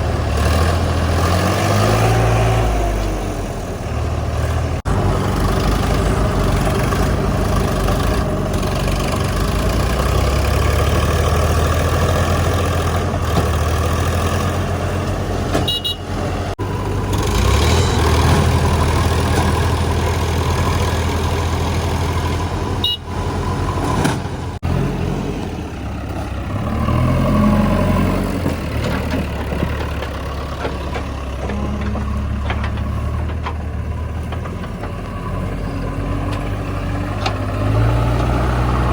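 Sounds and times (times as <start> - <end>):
heavy diesel engine revving: 0.0 - 38.9.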